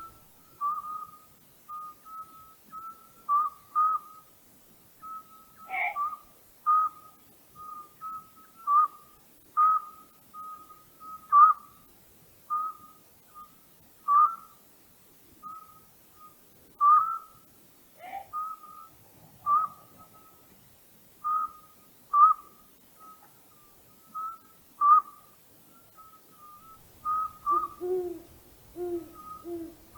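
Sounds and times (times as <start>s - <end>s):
owl hooting: 5.0s - 7.1s, 9.6s - 11.8s, 14.1s - 14.6s, 15.4s - 17.4s, 18.0s - 20.4s, 21.2s - 25.3s, 26.0s - 29.9s
two-part bird call: 5.1s - 7.0s, 25.9s - 29.9s.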